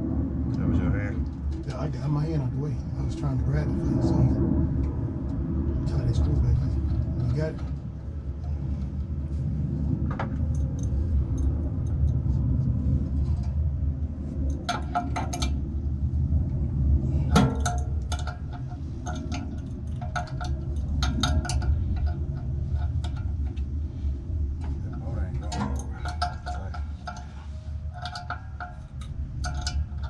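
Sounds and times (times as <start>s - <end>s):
low rumble: 0.0s - 30.0s
hand tools clinking against metal: 17.3s - 23.6s, 24.9s - 30.0s.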